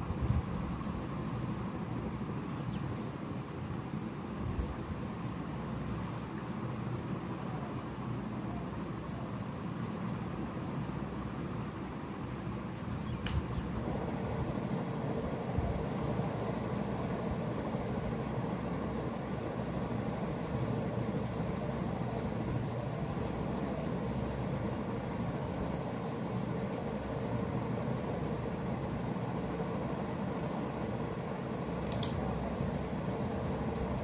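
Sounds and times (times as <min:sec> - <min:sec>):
constant hum: 0:00.0 - 0:34.0
hands rubbing hair and scalp: 0:20.2 - 0:28.6.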